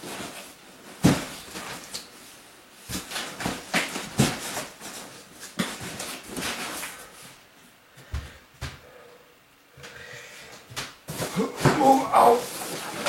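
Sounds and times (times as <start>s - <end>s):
cardboard boxes knocking and thumping: 0.0s - 1.9s, 2.9s - 6.7s
cardboard scraping rustles: 11.1s - 13.0s.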